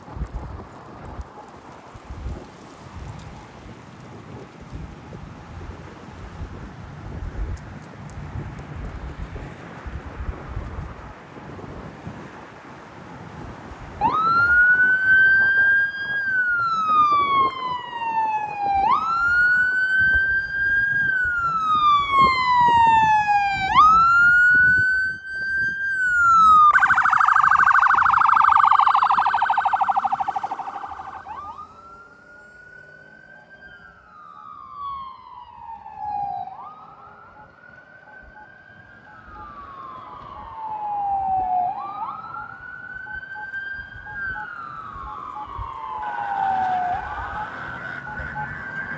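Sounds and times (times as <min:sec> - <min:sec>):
ambulance siren: 0:14.0 - 0:32.6, 0:33.6 - 0:48.9.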